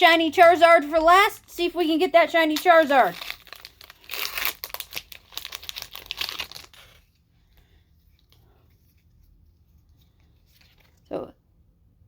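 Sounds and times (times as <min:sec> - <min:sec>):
foil wrapper tearing and crinkling: 0:02.5 - 0:07.0.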